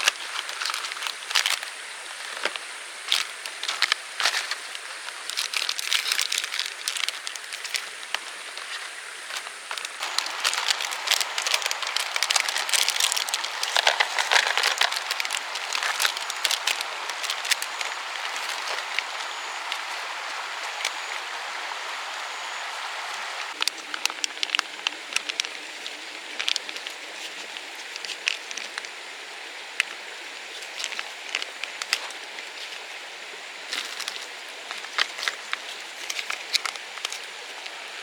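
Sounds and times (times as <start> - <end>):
rain drops ticking on a surface: 0.0 - 38.0.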